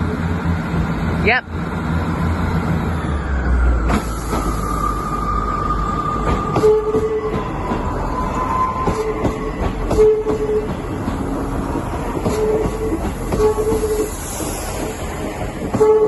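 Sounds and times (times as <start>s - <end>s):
train wheels squealing: 3.9s - 10.8s, 12.2s - 15.1s
train wheels clicking over rail joints: 6.1s - 16.0s.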